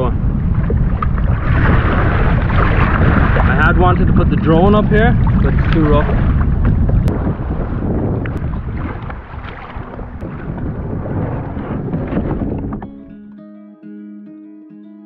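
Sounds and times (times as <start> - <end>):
choppy sea water: 0.0 - 13.1
wind buffeting microphone: 0.0 - 13.1
acoustic guitar music: 11.7 - 15.0.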